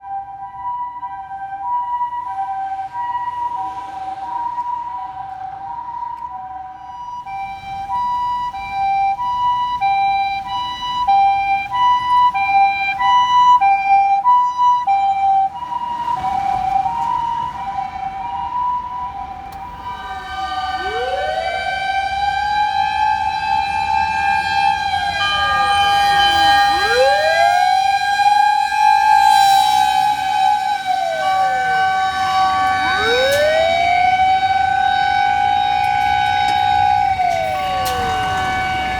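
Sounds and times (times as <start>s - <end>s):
mechanical motor siren wailing: 0.0s - 38.9s
two-tone ambulance siren: 0.0s - 38.9s
truck engine: 1.4s - 38.9s.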